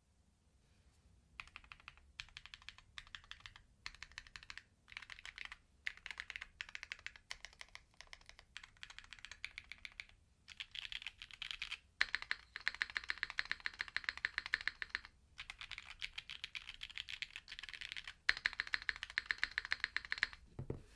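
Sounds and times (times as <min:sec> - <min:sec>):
mechanical keyboard typing: 0:01.4 - 0:20.4.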